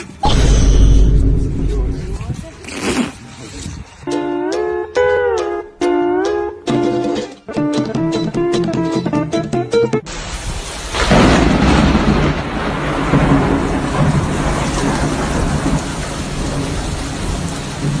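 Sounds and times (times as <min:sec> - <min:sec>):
loud rushing noise with low rumble: 0:00.2 - 0:02.6.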